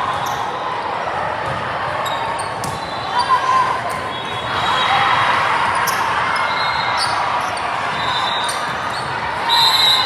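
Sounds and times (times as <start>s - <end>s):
murmur of voices in a hall: 0.0s - 10.0s
sneaker squeaks: 1.4s - 5.0s, 5.7s - 10.0s
whistle-like tone: 9.5s - 10.0s.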